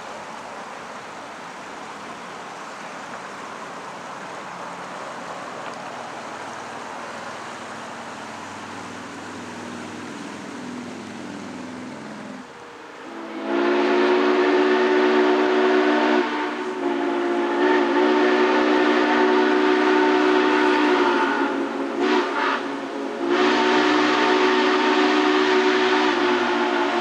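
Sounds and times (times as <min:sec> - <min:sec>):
steam locomotive whistle: 0:09.3 - 0:27.0.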